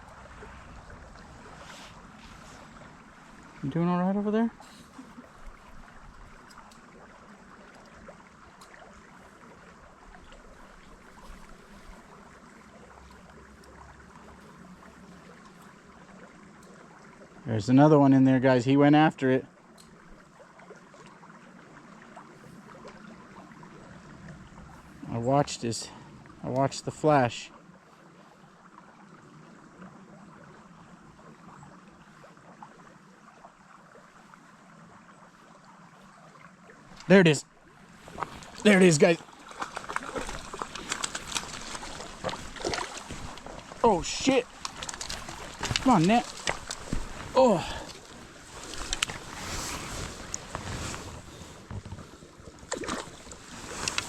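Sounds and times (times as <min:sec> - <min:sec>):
creek flowing: 0:00.0 - 0:54.0
light ticks: 0:19.7 - 0:20.0
faint clicks: 0:44.4 - 0:47.2, 0:47.8 - 0:49.2.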